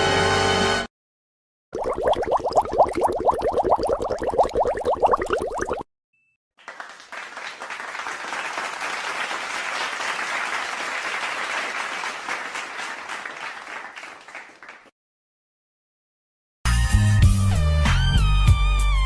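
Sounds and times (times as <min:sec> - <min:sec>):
crowd applauding: 0:06.6 - 0:14.9.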